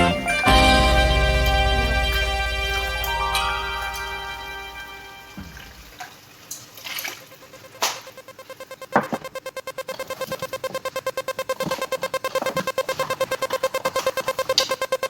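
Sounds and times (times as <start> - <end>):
electronic track with pulsing beat: 0.0 - 5.4, 7.5 - 15.0
music chord: 0.0 - 5.6
scattered clicks and knocks: 7.8 - 15.0.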